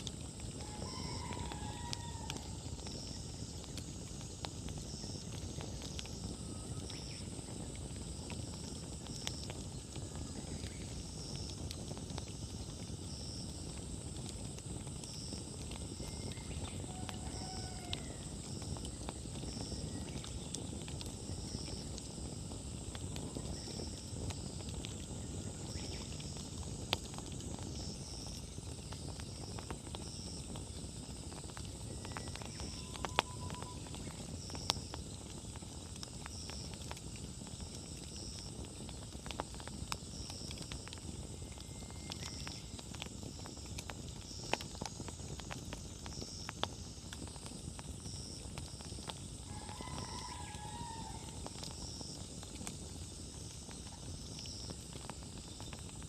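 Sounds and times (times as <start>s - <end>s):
bonfire crackling and popping: 0.0s - 56.0s.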